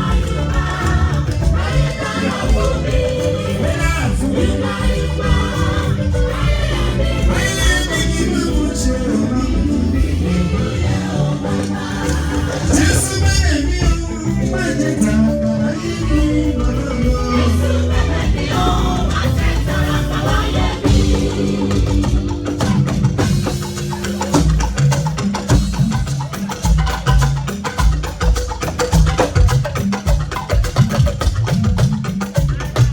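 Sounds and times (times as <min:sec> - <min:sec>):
person singing: 0:00.0 - 0:22.9
drums: 0:00.0 - 0:32.9
hand percussion: 0:00.0 - 0:32.9.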